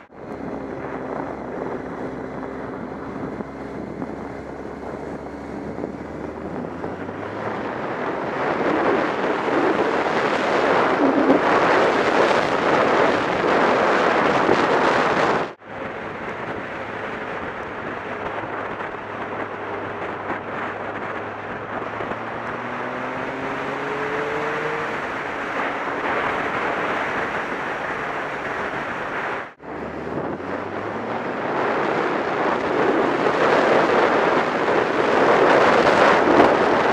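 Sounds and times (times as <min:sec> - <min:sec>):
motorcycle engine accelerating: 0:00.0 - 0:36.9
wind rushing over microphone: 0:00.0 - 0:36.9.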